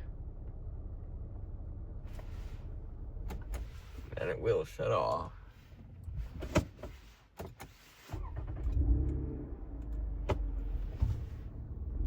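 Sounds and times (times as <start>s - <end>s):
car engine starting and running: 0.0s - 5.3s, 7.6s - 12.0s
sharp clicks in car: 3.2s - 3.7s.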